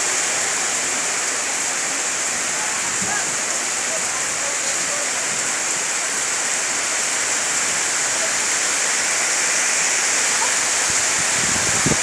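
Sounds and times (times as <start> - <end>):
heavy rain pouring: 0.0 - 12.0.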